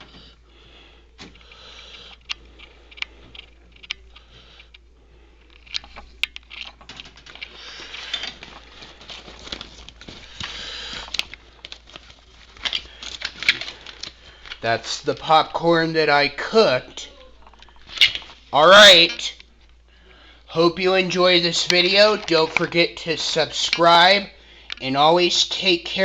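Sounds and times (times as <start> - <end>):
rustling: 5.3 - 15.3.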